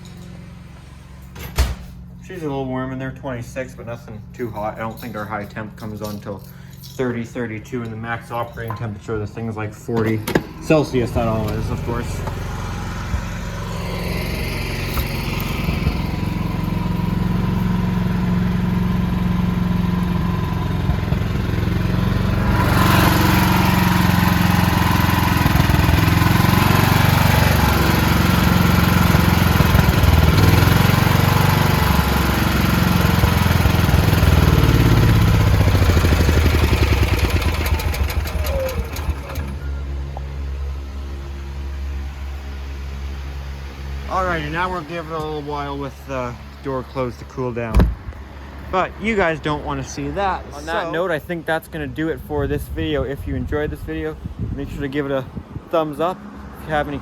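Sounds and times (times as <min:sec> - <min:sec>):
generator engine running: 0:06.4 - 0:51.1.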